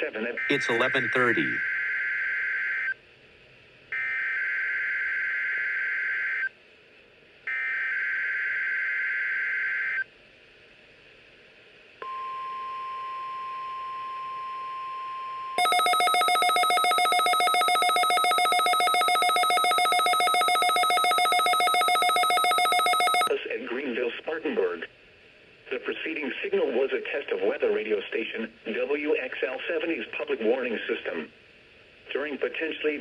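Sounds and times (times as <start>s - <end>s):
rapidly pulsing electronic alarm: 15.6s - 23.3s
steady warning alarm tone: 15.6s - 23.3s.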